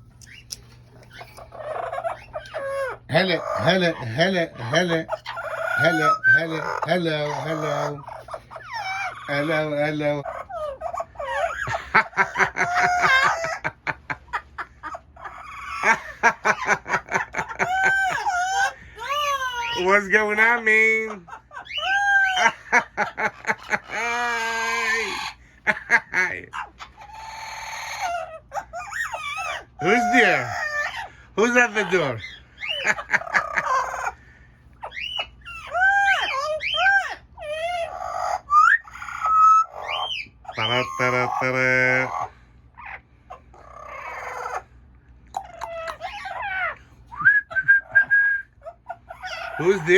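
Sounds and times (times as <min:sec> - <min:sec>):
parrot wailing calls: 0:00.0 - 0:44.7, 0:45.3 - 0:49.9
parrot whistled calls: 0:05.1 - 0:09.3, 0:21.5 - 0:22.5, 0:34.8 - 0:41.4, 0:45.3 - 0:49.9.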